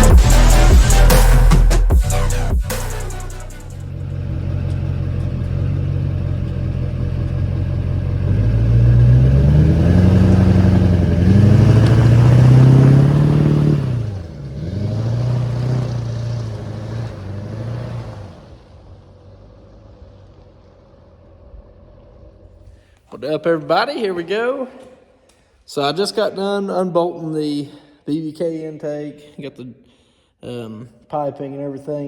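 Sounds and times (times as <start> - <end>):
car engine revving: 0.0 - 22.9.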